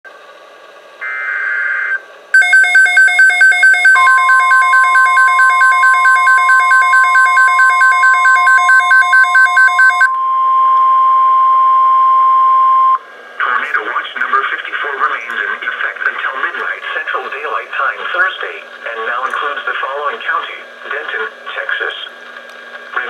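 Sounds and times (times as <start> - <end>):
data buzz: 1.0 - 10.1
rapid alarm beeps: 2.4 - 10.1
steady warning tone: 2.4 - 13.0.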